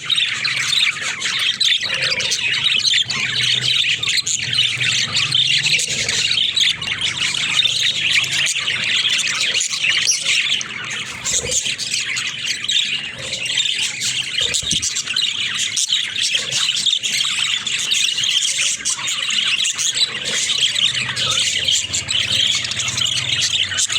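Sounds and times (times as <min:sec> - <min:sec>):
budgerigars chattering: 0:00.0 - 0:23.9.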